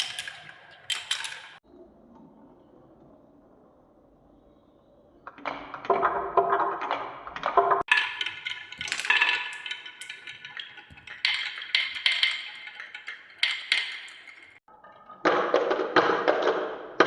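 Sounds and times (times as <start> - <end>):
marbles clacking with ringing notes: 0.0 - 1.6, 7.9 - 15.0
marbles rolling: 0.0 - 1.6, 7.8 - 14.6.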